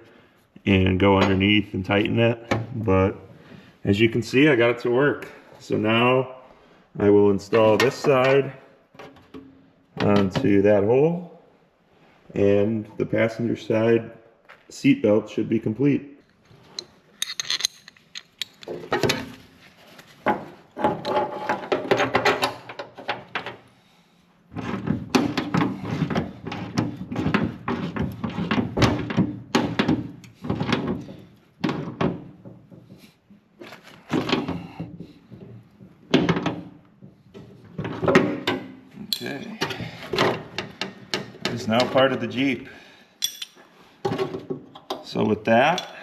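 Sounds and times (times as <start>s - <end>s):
metal rattling: 16.8s - 19.4s.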